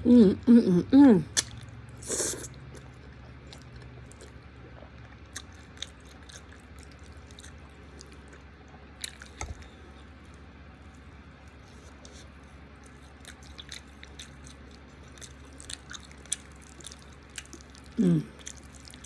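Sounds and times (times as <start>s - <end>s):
steady low hum: 0.0s - 19.0s
person chewing: 1.3s - 19.0s
wet mouth clicks: 1.4s - 2.9s.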